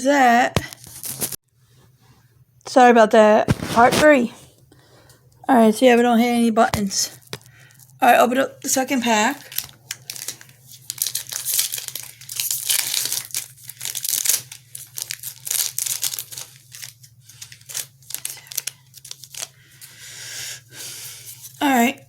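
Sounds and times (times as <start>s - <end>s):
low steady hum: 0.0s - 22.0s
foil wrapper tearing and crinkling: 0.7s - 1.4s, 9.3s - 20.1s.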